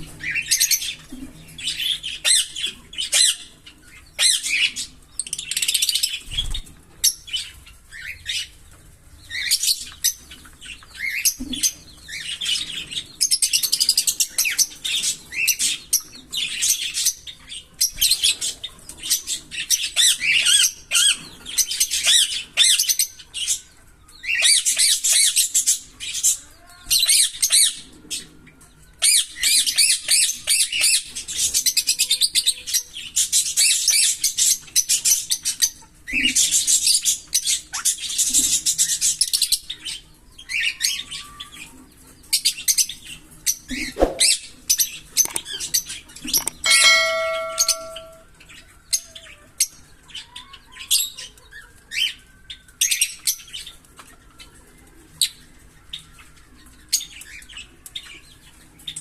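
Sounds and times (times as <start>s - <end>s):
lovebirds chirping: 43.2s - 48.2s.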